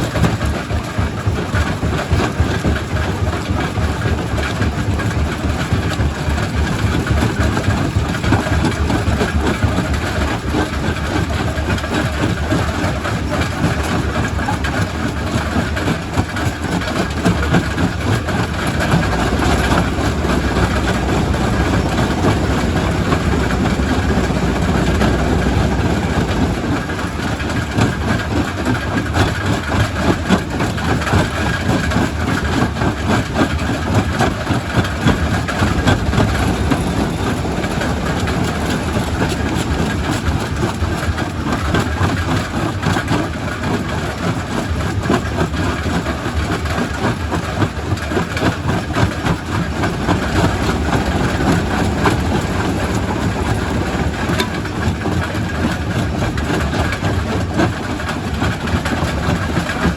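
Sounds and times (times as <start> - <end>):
rock crusher rumbling and grinding: 15.8 - 43.3, 47.3 - 59.9.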